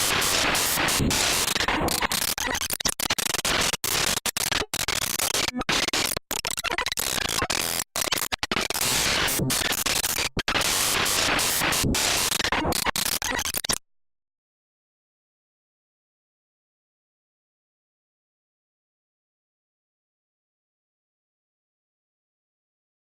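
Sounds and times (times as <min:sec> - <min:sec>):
harsh static noise: 0:00.0 - 0:13.8.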